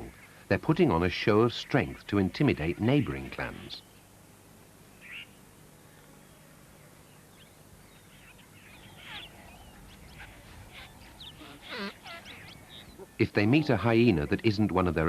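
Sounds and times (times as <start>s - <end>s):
hyenas calling: 8.2s - 13.8s.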